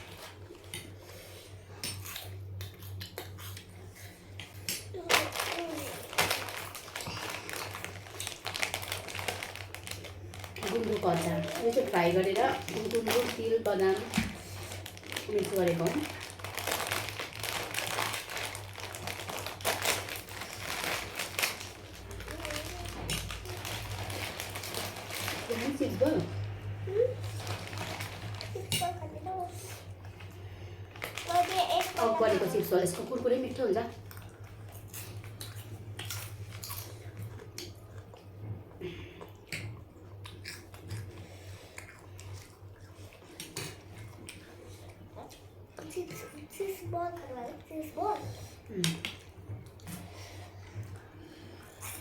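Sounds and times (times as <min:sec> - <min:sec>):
crunchy food being chewed: 0:01.8 - 0:11.9, 0:34.0 - 0:45.7
chips crunching while chewed: 0:05.1 - 0:11.9.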